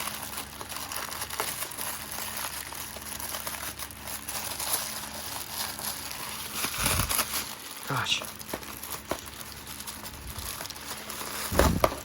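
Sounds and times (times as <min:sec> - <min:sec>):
plastic bag crinkling: 0:00.0 - 0:12.0.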